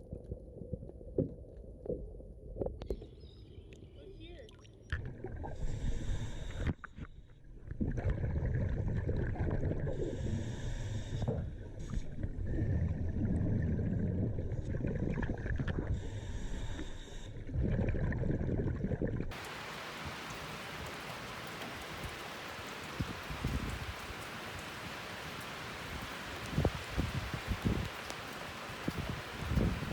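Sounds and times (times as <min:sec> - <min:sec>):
steady rain hiss: 0:19.3 - 0:29.9
water sloshing and splashing: 0:19.3 - 0:29.9.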